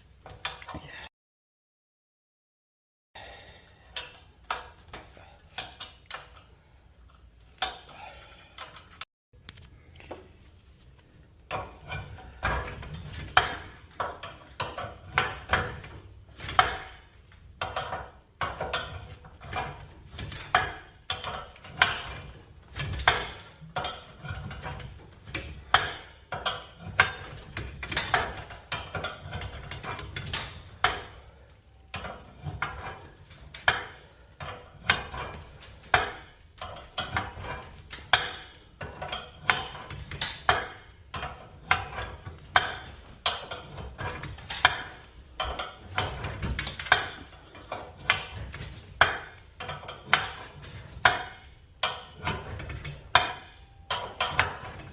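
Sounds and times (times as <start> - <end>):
metal tools clanking: 11.5 - 54.9.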